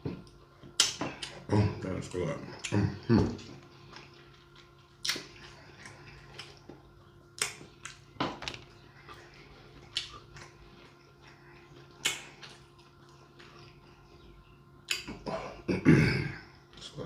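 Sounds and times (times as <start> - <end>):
wet eating smacks and crunches: 0.0 - 1.5, 2.6 - 14.0, 14.8 - 15.3.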